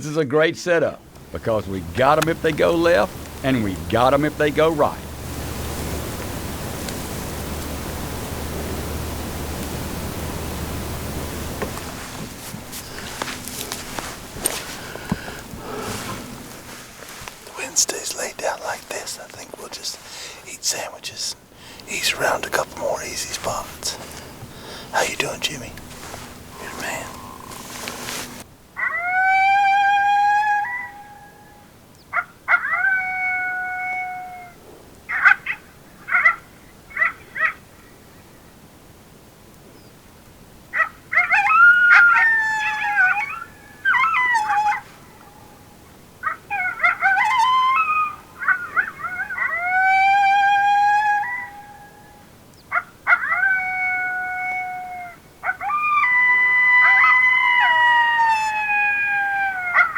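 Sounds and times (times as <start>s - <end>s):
yipping howling chorus: 1.4s - 17.7s, 41.1s - 59.9s
coyote yips: 25.9s - 31.5s, 32.1s - 37.6s, 40.8s - 45.6s, 46.2s - 59.9s
coyote howls from predator call: 25.9s - 37.6s, 40.7s - 59.9s.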